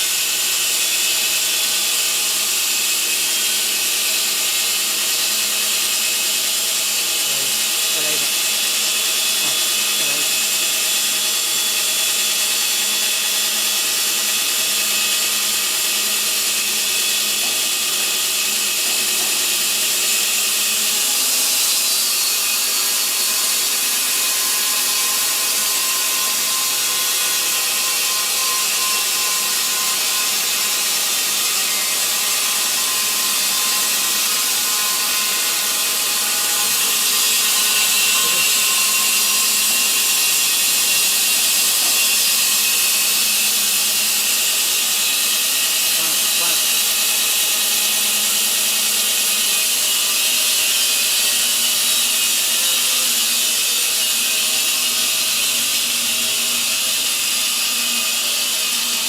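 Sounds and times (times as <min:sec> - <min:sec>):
band saw blade hissing: 0:07.2 - 0:10.7, 0:36.2 - 0:44.2, 0:45.0 - 0:47.2.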